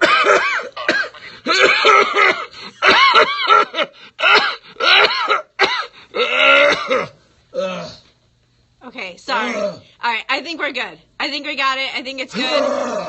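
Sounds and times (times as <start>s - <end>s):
man coughing harshly: 0.0s - 7.9s
man clearing throat: 0.0s - 8.0s.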